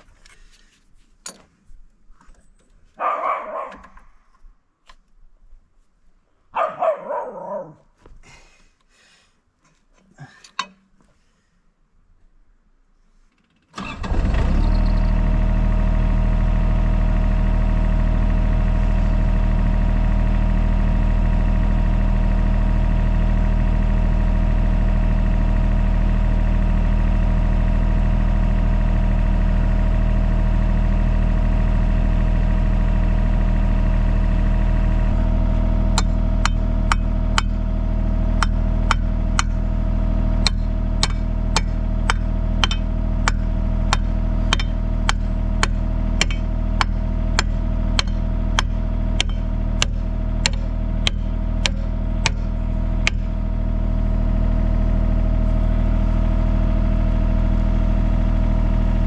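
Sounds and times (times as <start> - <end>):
excavator engine running: 3.0 - 4.0, 13.8 - 59.0
sharp knocks: 36.0 - 37.6, 38.4 - 39.6, 40.4 - 52.5, 53.1 - 53.3.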